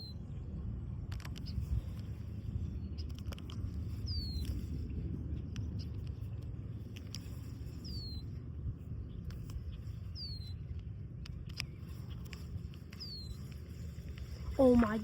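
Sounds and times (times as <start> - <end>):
steady low rumble: 0.0 - 15.0
faint clicks: 1.1 - 2.2, 3.0 - 4.6, 9.2 - 14.6.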